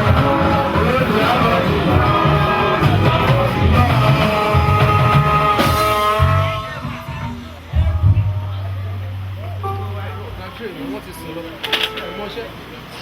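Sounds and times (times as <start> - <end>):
people singing: 0.0 - 6.9
bass beat: 0.0 - 10.6
guitar: 0.0 - 13.0.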